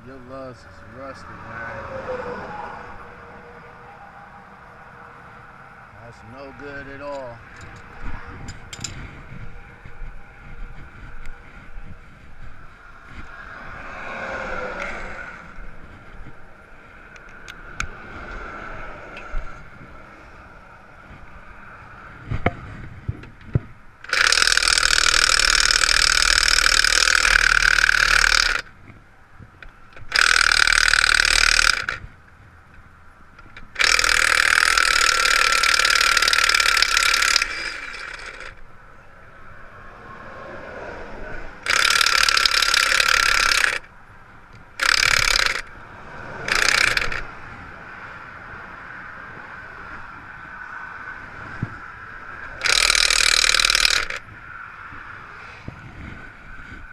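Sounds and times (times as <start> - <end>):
sharp clicks: 23.5 - 28.7, 29.6 - 32.1, 33.4 - 38.6, 41.6 - 43.9, 44.5 - 45.8, 46.4 - 47.3, 52.6 - 54.2
impact wrench hammering: 24.0 - 28.7, 33.6 - 38.5, 41.6 - 43.9, 44.8 - 45.7, 46.4 - 47.2, 52.6 - 54.2.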